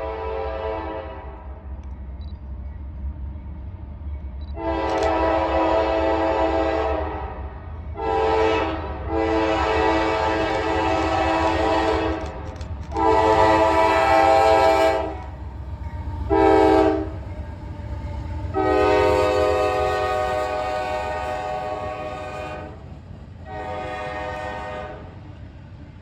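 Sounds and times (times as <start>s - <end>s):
locomotive horn blasts: 0.0s - 1.4s, 4.6s - 15.4s, 16.3s - 17.3s, 18.5s - 22.8s, 23.4s - 25.1s
low rumble of train: 0.0s - 26.0s.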